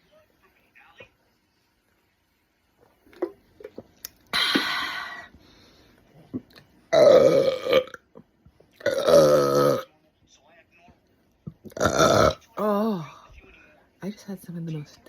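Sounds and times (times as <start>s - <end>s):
person burping: 6.9s - 8.1s, 8.8s - 9.9s, 11.6s - 13.1s.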